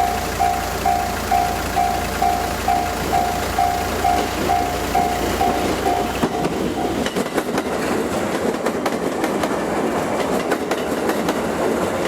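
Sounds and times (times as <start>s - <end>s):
level crossing warning beeps: 0.0s - 7.2s
train rumble: 0.0s - 12.0s.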